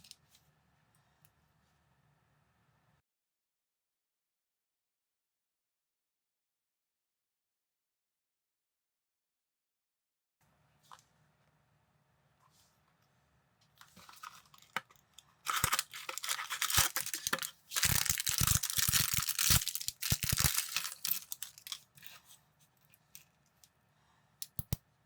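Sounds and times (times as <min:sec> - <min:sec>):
plastic bag tearing and crinkling: 0:15.5 - 0:22.2
sharp plastic clicks: 0:24.4 - 0:24.8.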